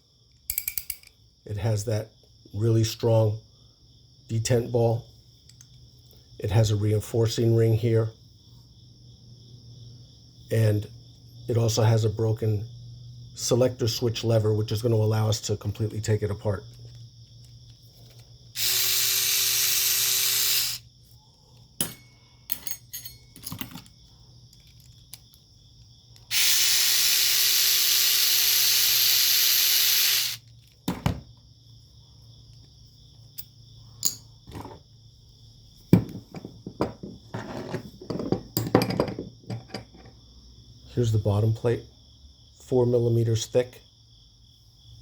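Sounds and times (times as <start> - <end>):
small metal parts clicking: 0.4 - 1.2, 21.8 - 25.4
hissing whir: 18.6 - 20.8, 26.3 - 30.4.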